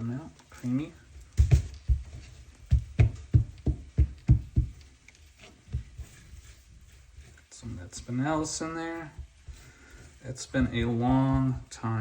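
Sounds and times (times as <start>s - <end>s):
dull knocks: 2.7s - 4.9s.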